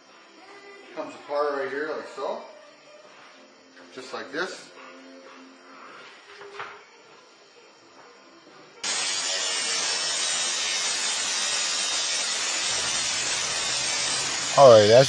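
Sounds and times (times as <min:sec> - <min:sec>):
angle grinder grinding metal: 0:08.8 - 0:15.0.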